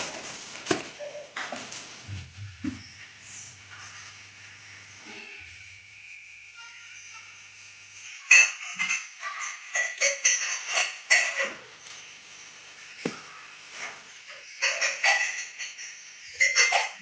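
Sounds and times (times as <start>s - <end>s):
paper and plastic crinkling: 0.0s - 2.7s.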